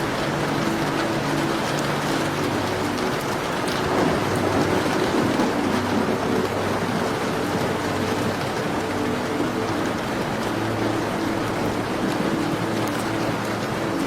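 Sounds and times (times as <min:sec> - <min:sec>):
fireplace crackling: 0:00.0 - 0:14.0
rain pattering: 0:00.0 - 0:14.0.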